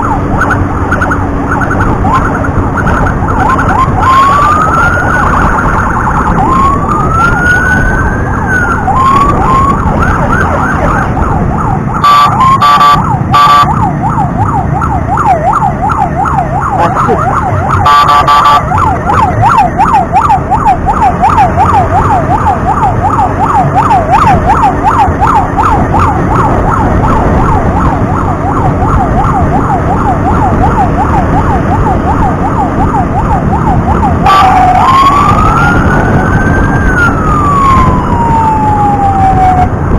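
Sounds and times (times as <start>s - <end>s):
emergency siren wailing and yelping: 0.0s - 39.9s
engine and road noise: 0.0s - 39.9s
horn blasts: 12.0s - 13.8s, 17.8s - 18.7s.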